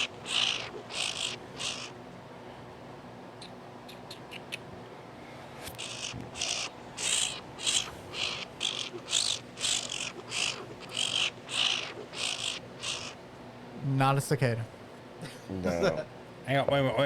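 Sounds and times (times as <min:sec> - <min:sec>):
animal chirping calls: 0:00.0 - 0:02.0, 0:05.7 - 0:13.2.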